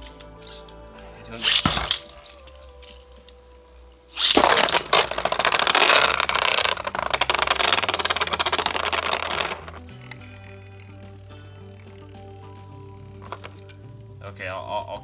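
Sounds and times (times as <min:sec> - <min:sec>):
spinning tops clattering together: 0:01.4 - 0:03.4, 0:04.1 - 0:13.9.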